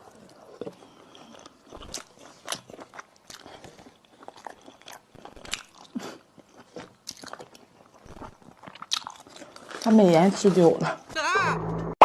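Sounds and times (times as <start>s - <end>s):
crunchy eating and chewing: 0.0s - 10.8s.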